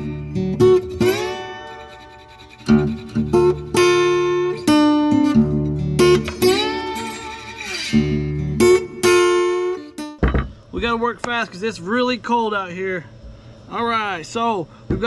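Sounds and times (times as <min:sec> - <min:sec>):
plucked guitar notes and strums: 0:00.0 - 0:02.0, 0:02.7 - 0:10.2.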